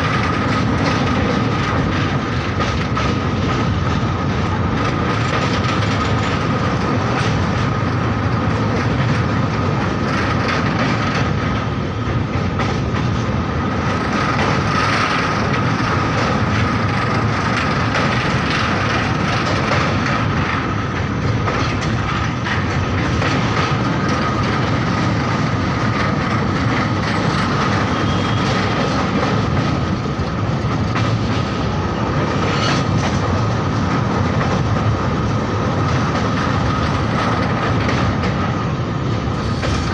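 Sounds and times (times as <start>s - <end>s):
train rumbling over bridge: 0.0s - 39.9s
wheels clattering over rails: 0.0s - 39.9s.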